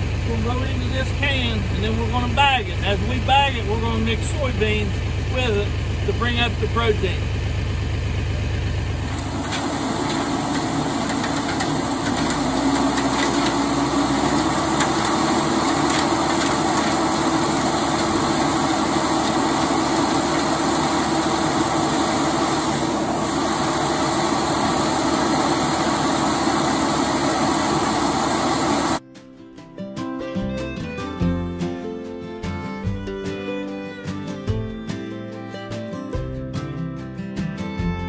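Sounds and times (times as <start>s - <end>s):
hammer mill grinding corn: 0.0s - 29.0s
tractor engine running: 0.0s - 29.0s.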